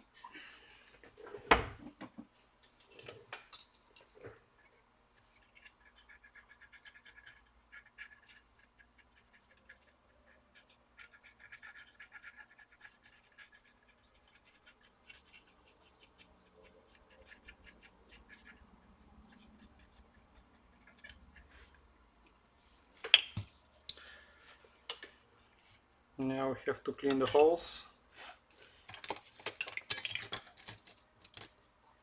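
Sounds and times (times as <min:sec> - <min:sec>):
scratching and scraping on circuit board: 0:05.2 - 0:21.9.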